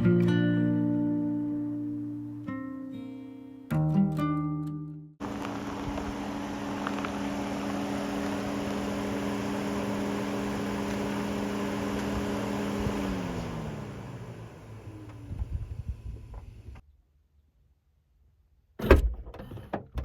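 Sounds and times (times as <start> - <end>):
car engine hum: 5.2 - 16.8
road noise: 5.2 - 16.8.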